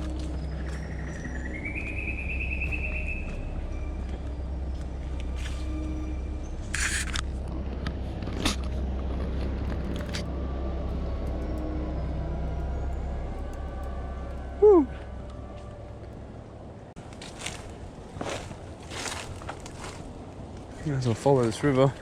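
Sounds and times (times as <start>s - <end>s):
steady low rumble: 0.0s - 20.8s
rustling through undergrowth: 17.0s - 22.0s.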